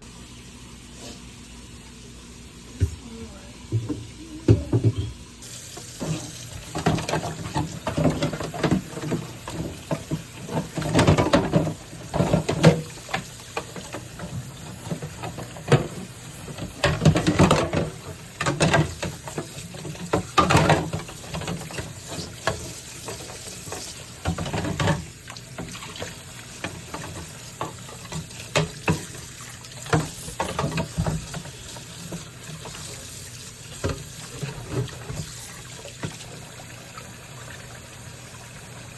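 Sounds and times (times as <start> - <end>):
water scrubbing and splashing: 5.9 - 36.5.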